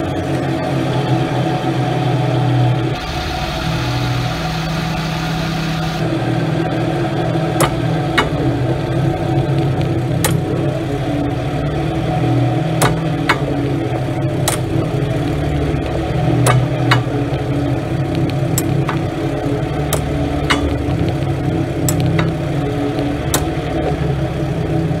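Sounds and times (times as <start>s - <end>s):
car engine idling: 0.0s - 25.0s
sharp engine clicks or knocks: 7.5s - 10.8s, 12.7s - 23.9s.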